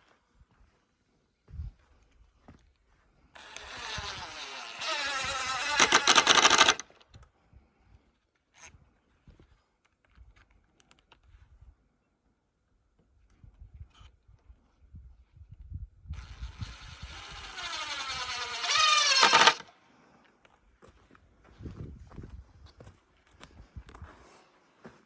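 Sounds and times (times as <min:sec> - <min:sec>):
power driver driving screw: 0:03.4 - 0:06.9, 0:16.2 - 0:19.7
rattling clatter: 0:04.7 - 0:06.8, 0:17.2 - 0:19.6.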